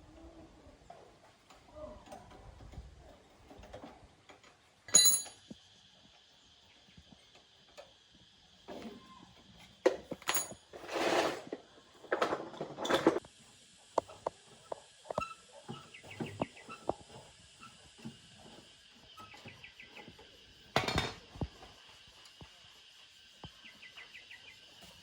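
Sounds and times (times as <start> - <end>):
ringing metallic clank: 4.9 - 5.4
metal tools knocking and clinking: 4.9 - 5.6, 10.1 - 10.7.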